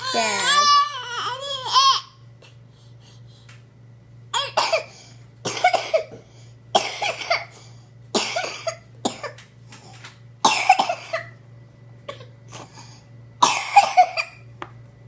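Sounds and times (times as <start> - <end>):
baby whimpering: 0.0 - 2.1
baby coughing: 4.3 - 6.2, 6.8 - 7.5, 8.2 - 9.4, 10.4 - 11.4, 13.4 - 14.4.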